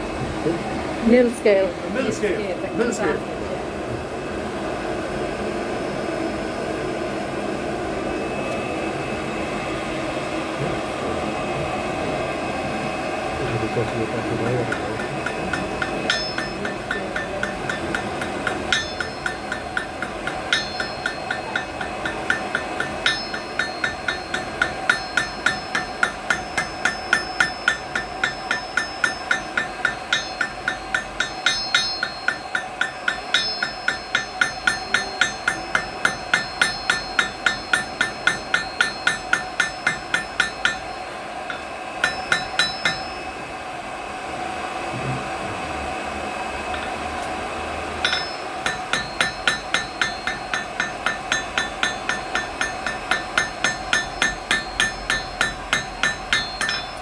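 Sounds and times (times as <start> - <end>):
hammer ringing on anvil: 13.7 - 43.4, 46.7 - 47.0, 48.0 - 57.0.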